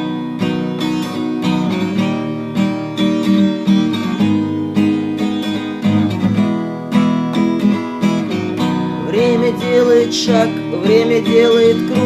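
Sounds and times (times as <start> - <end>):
acoustic guitar strumming: 0.0 - 12.0
person singing: 9.0 - 12.0.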